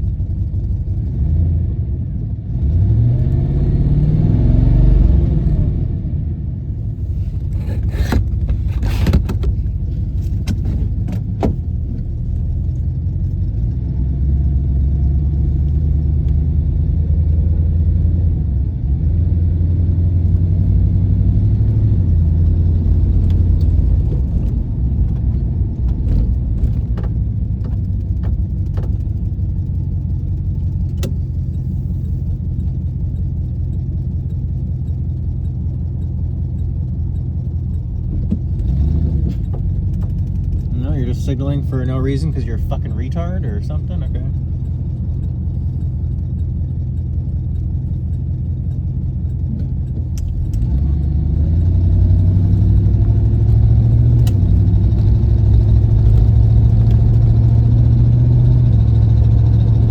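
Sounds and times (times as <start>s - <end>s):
car engine droning: 0.0s - 59.9s.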